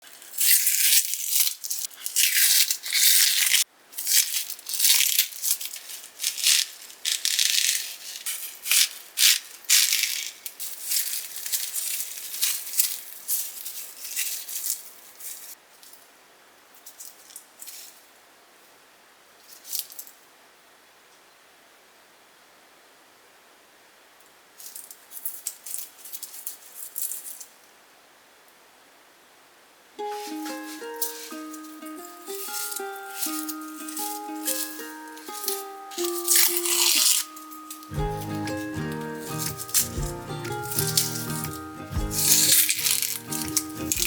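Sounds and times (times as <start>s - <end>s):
dry paper rustling: 0.0s - 15.6s, 30.1s - 44.0s.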